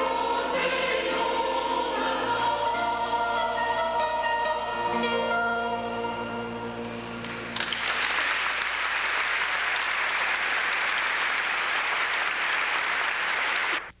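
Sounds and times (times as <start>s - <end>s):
audience applauding: 7.2s - 13.9s.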